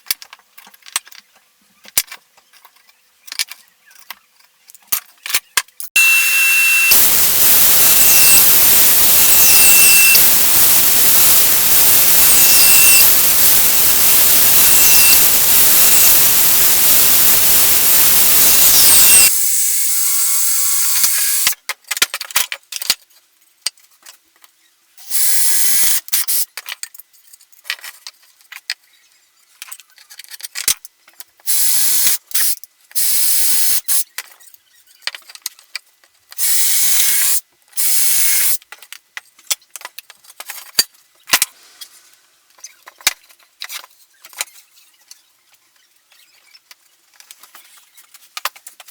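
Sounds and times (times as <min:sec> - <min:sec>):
woodworking power tool hissing: 0:06.0 - 0:21.6, 0:25.0 - 0:26.1, 0:36.4 - 0:38.6.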